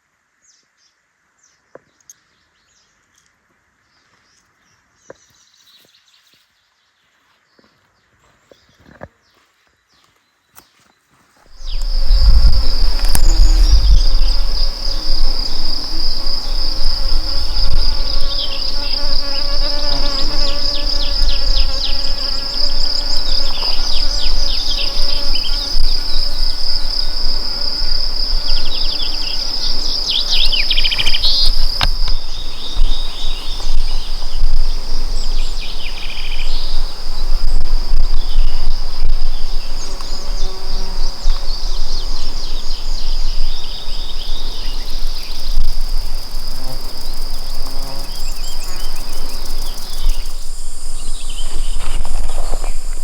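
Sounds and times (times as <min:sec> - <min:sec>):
insects chirring: 0:11.5 - 0:53.0.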